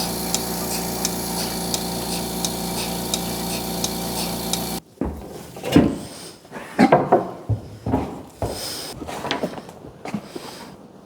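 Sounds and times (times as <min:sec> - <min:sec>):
pulsator clicks: 0:00.0 - 0:04.8
vacuum pump humming: 0:00.0 - 0:04.8.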